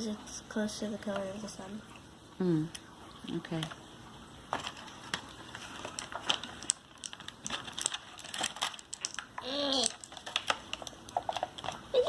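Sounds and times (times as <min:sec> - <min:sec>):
plastic packaging crinkling: 0:04.5 - 0:12.0
plastic accessories clicking: 0:05.8 - 0:12.0.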